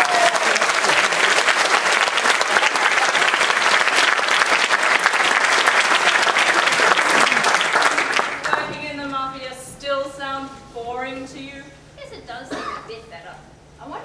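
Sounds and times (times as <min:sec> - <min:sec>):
audience applauding: 0:00.0 - 0:08.9.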